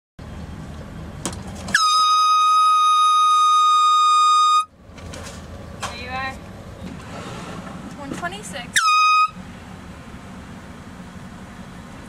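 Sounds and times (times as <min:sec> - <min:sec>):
air horn blasting: 0:01.7 - 0:04.7, 0:08.7 - 0:09.4.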